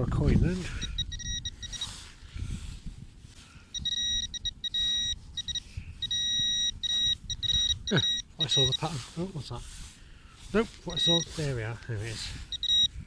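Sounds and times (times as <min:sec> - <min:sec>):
wind: 0:00.0 - 0:13.0
metal detector beeping: 0:00.6 - 0:02.0, 0:03.7 - 0:09.4, 0:10.5 - 0:13.0.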